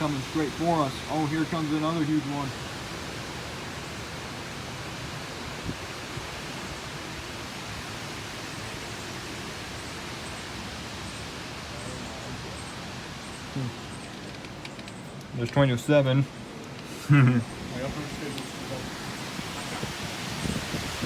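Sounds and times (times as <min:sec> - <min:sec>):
strong wind gust: 0:16.9 - 0:21.0.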